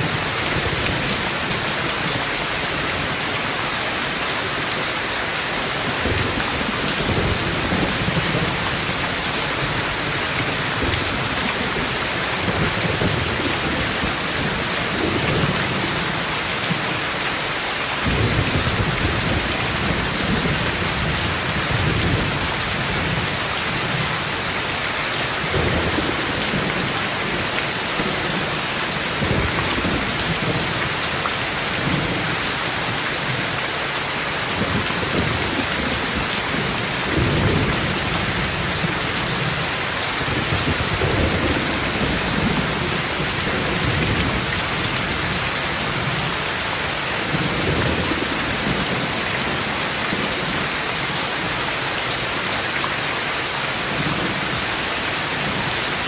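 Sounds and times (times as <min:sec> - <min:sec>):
steady rainfall: 0:00.0 - 0:56.0
thunder rumbling: 0:05.6 - 0:16.9, 0:18.0 - 0:24.8, 0:25.4 - 0:32.4, 0:34.5 - 0:50.7.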